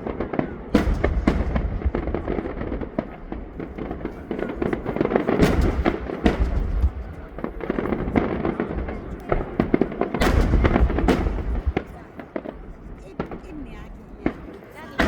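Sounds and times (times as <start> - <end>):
firework shells booming: 0.0 - 13.6
firework cracks and crackling: 0.0 - 15.0.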